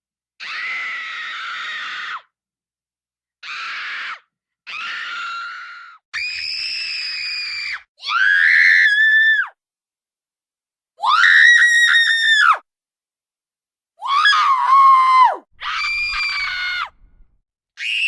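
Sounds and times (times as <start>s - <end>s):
children screaming in fear: 3.4s - 9.6s, 14.0s - 16.9s.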